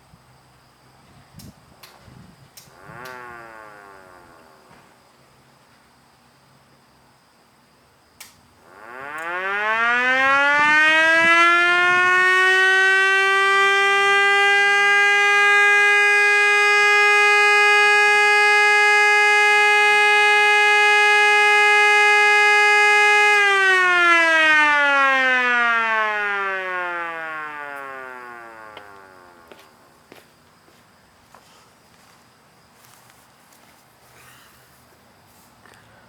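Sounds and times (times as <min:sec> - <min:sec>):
siren winding up and down: 0:02.7 - 0:04.8, 0:08.6 - 0:29.8.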